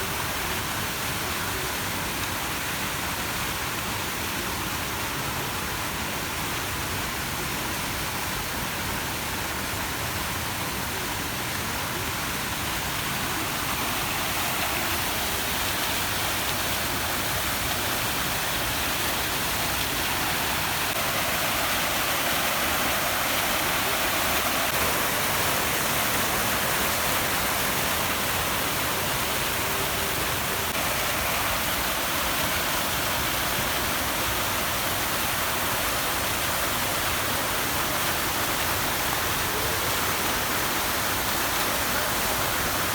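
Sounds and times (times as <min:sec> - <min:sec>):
rush of flowing water: 0:00.0 - 0:42.9.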